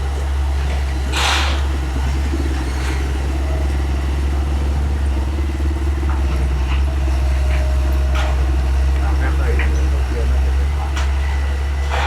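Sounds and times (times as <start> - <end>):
diesel engine droning: 0.0 - 12.0.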